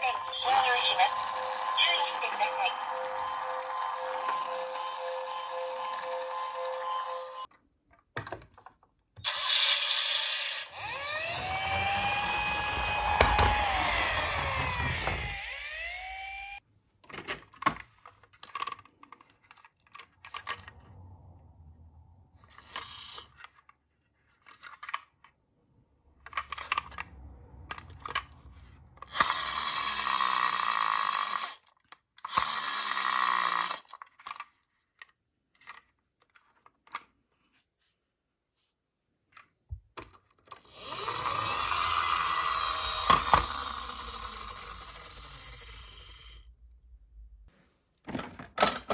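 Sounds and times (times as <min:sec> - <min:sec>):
loud rasping bursts: 0:09.3 - 0:16.6, 0:40.8 - 0:46.3
rising and falling tones: 0:09.3 - 0:16.6, 0:40.9 - 0:47.5
low rumble: 0:20.4 - 0:23.0, 0:25.7 - 0:29.6, 0:41.8 - 0:47.5.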